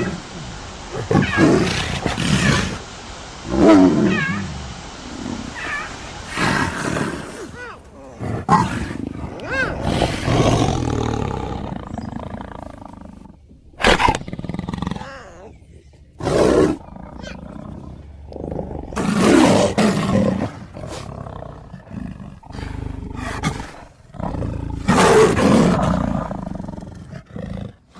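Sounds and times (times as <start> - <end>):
big cat roaring: 5.5 - 15.6.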